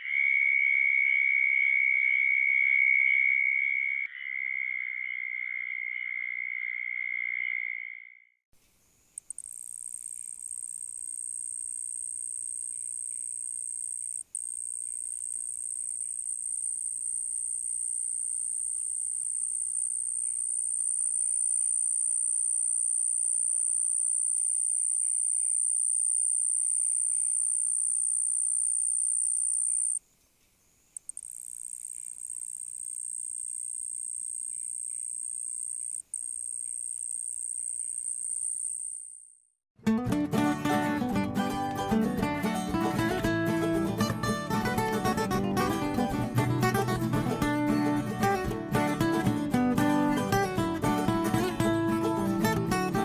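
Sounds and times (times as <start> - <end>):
cricket trilling: 0.0 - 39.5.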